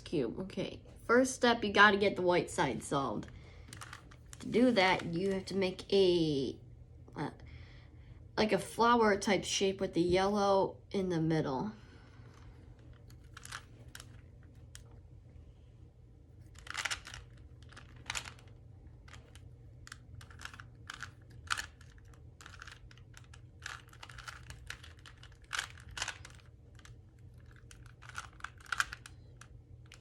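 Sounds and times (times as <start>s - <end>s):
puzzle cube plastic clicks: 3.7s - 4.6s, 12.9s - 14.9s, 16.4s - 30.0s.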